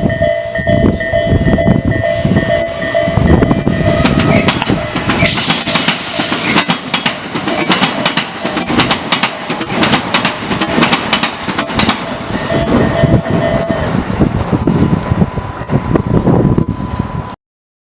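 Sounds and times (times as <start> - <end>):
train wheels clattering over rail joints: 3.5 - 13.3.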